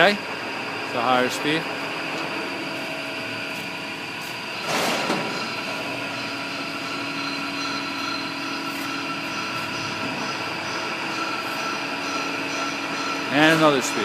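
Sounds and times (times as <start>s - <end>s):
lathe gearing whine: 0.0s - 14.0s.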